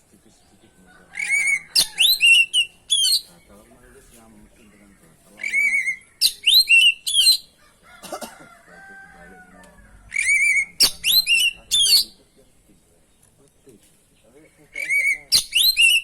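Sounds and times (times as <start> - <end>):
low drawn-out bird call: 0.0 - 3.8, 4.4 - 12.6, 14.4 - 16.0
bird song with whistles: 1.2 - 3.3, 5.4 - 7.5, 10.2 - 12.1, 14.8 - 16.0.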